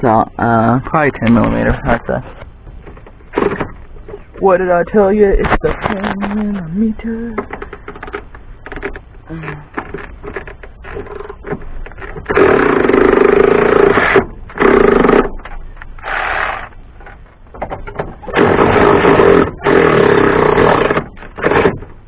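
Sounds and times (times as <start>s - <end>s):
power tool driving bolts: 9.7s - 22.0s.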